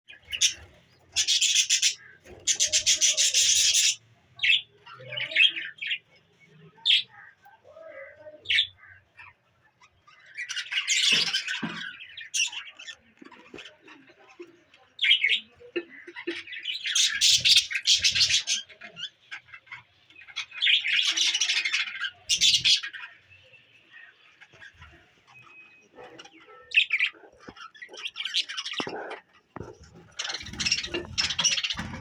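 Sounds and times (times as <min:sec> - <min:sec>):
budgie chicks squawking: 0:00.1 - 0:05.5, 0:15.2 - 0:23.3, 0:24.4 - 0:32.0.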